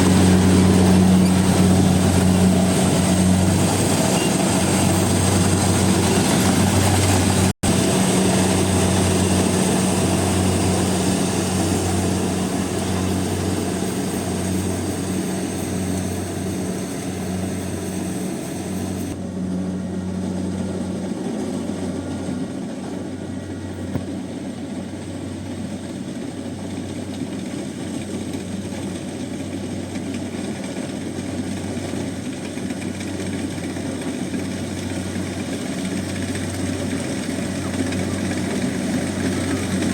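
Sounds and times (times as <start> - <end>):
combine harvester humming: 0.0 - 39.9.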